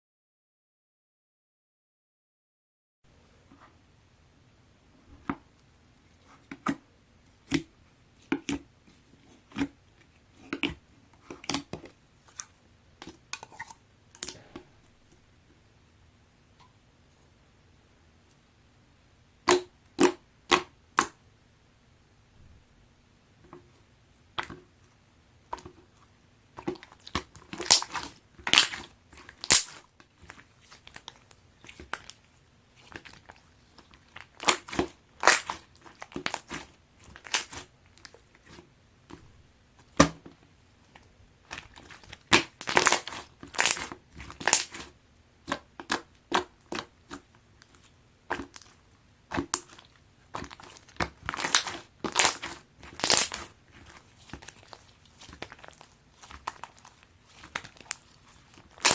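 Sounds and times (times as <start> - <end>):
slime being squished by hand: 26.5 - 58.9.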